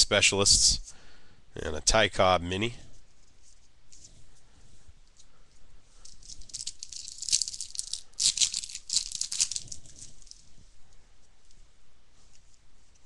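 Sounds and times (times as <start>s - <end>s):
card packs rustling: 6.1s - 10.4s.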